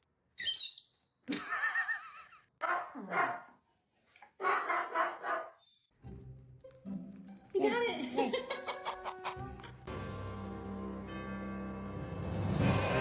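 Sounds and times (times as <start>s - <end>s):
bark-like animal calls: 2.6s - 3.5s, 4.4s - 5.6s.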